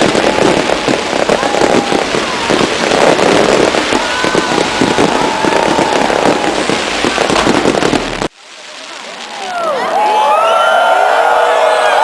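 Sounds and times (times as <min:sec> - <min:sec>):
firework whistles gliding: 0:00.0 - 0:08.0
fireworks crackling and popping: 0:00.0 - 0:10.9.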